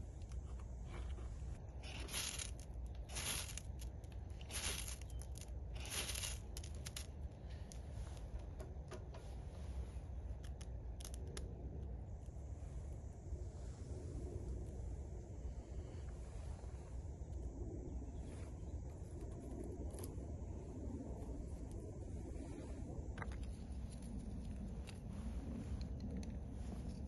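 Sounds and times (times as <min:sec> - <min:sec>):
clicks and crackles: 0:00.0 - 0:09.3, 0:10.4 - 0:12.4
ferro rod scraping: 0:00.4 - 0:07.1.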